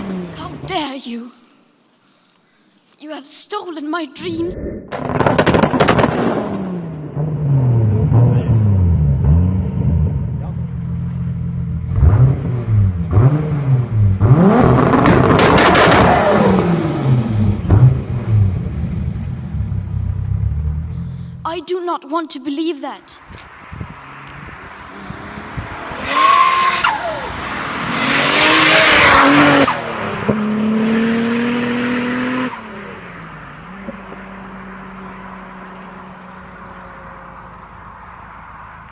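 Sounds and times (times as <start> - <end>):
car engine revving: 4.2 - 21.2, 23.6 - 38.9.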